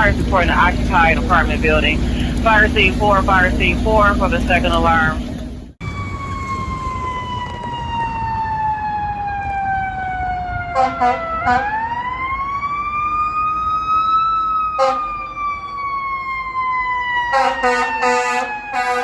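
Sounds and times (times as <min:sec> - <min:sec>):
low engine rumble: 0:00.0 - 0:13.8
air horn blasts: 0:14.8 - 0:15.0, 0:17.3 - 0:19.0.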